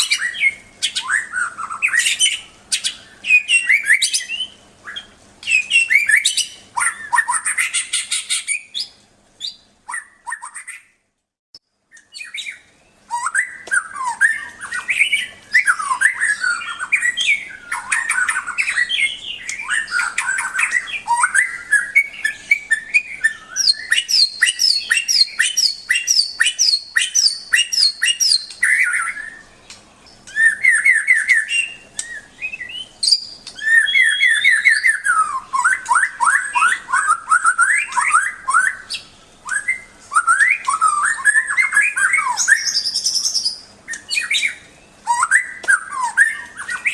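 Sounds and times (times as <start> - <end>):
bird singing whistled song: 0.0 - 11.0, 11.9 - 46.9.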